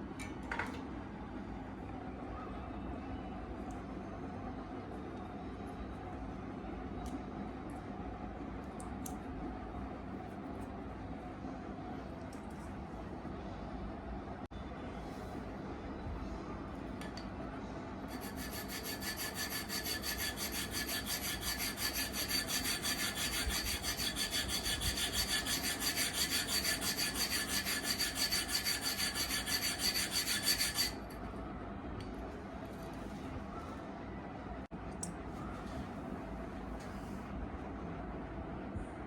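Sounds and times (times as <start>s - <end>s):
sandpaper sanding strokes: 18.2s - 31.0s.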